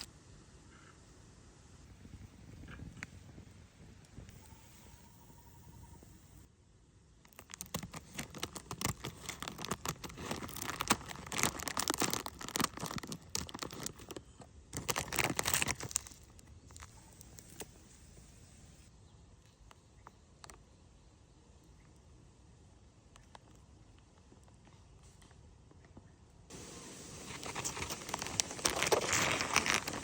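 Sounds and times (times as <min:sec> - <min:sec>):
material crinkling and tearing: 0:07.2 - 0:17.8, 0:27.0 - 0:30.0.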